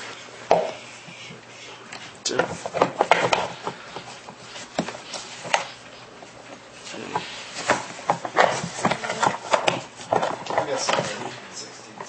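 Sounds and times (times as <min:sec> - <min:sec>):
plastic parts knocking and clicking: 0:07.7 - 0:11.3.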